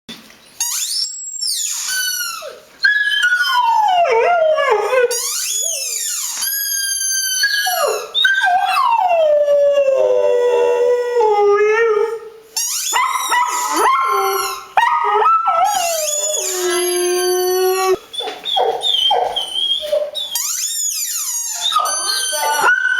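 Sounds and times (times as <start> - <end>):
dog howling: 2.4 - 6.2, 7.0 - 12.3, 13.0 - 20.4, 21.5 - 22.9.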